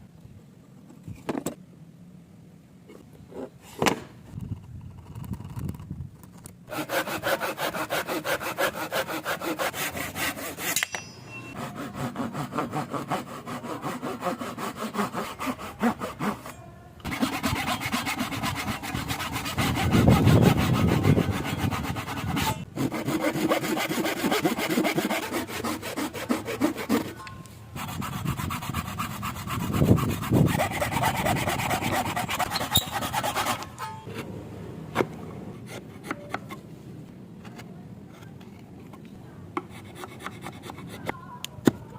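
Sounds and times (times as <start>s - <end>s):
hand saw cutting wood: 6.7s - 27.2s, 27.8s - 34.0s.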